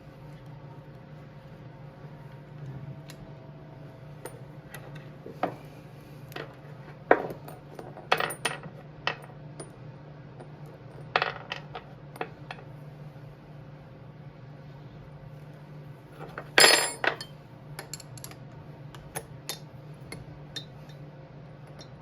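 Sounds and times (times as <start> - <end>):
low hum: 0.0 - 6.8
metal tools clinking: 16.6 - 18.4.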